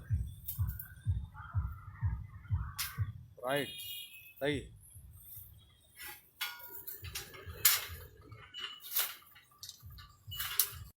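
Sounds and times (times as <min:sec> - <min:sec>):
metal tools clinking: 0:05.3 - 0:10.9.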